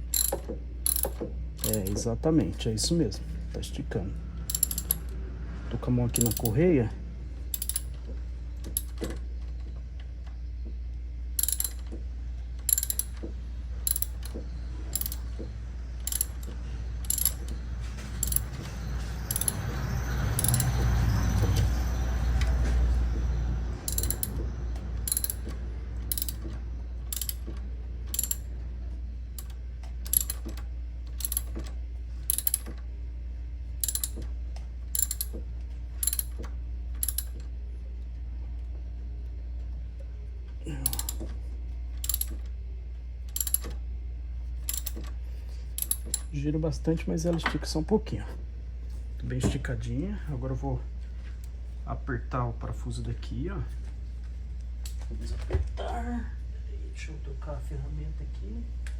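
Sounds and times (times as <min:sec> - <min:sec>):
ratchet wrench clicking: 0:00.0 - 0:02.0, 0:04.5 - 0:05.1, 0:06.2 - 0:06.6, 0:07.5 - 0:08.0, 0:08.7 - 0:09.0, 0:11.4 - 0:11.9, 0:12.7 - 0:13.2, 0:13.9 - 0:15.3, 0:16.0 - 0:17.6, 0:18.2 - 0:18.6, 0:19.3 - 0:19.7, 0:20.4 - 0:20.8, 0:23.9 - 0:24.4, 0:25.0 - 0:26.5, 0:27.1 - 0:27.5, 0:28.2 - 0:28.5, 0:30.1 - 0:30.6, 0:31.2 - 0:31.6, 0:32.3 - 0:32.7, 0:33.8 - 0:34.2, 0:35.0 - 0:35.4, 0:36.0 - 0:36.4, 0:37.0 - 0:37.4, 0:40.8 - 0:41.2, 0:42.0 - 0:42.4, 0:43.4 - 0:43.7, 0:44.7 - 0:45.0, 0:45.8 - 0:46.3.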